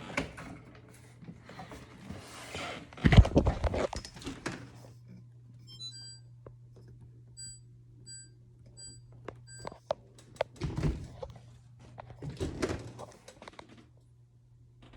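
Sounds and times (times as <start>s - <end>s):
steady low hum: 0.0s - 14.9s
dishwasher control panel beeping: 5.6s - 6.3s, 7.4s - 9.8s.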